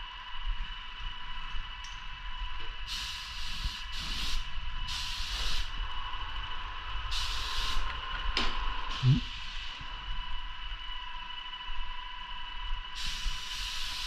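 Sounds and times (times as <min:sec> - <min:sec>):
spray gun hissing bursts: 0:02.9 - 0:05.7, 0:07.1 - 0:07.9, 0:13.0 - 0:14.0
steady machine whine: 0:05.6 - 0:14.0.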